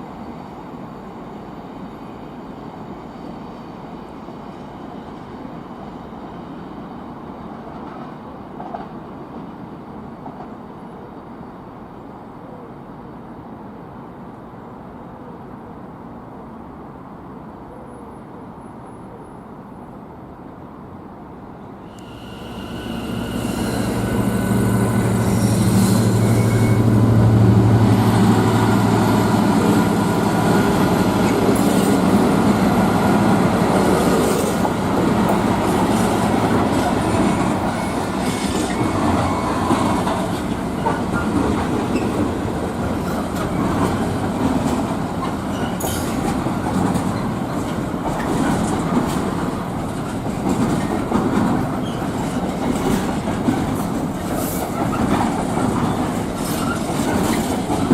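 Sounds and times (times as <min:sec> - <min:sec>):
train wheel squeal: 0:21.9 - 0:27.4, 0:35.4 - 0:42.4, 0:45.2 - 0:46.3, 0:51.8 - 0:57.7
locomotive low drone: 0:21.9 - 0:38.0
wagons rattling over rail joints: 0:34.6 - 0:57.9.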